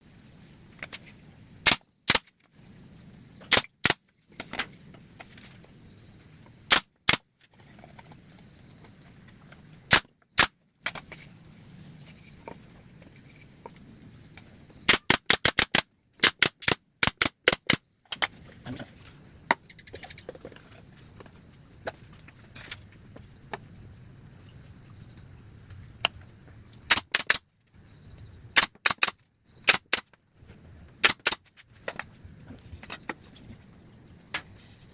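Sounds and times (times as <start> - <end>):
insects chirring: 0.0 - 34.9
hammer nailing wooden boards: 14.9 - 17.8, 26.9 - 27.4, 28.6 - 29.1, 29.7 - 30.1, 31.0 - 31.5.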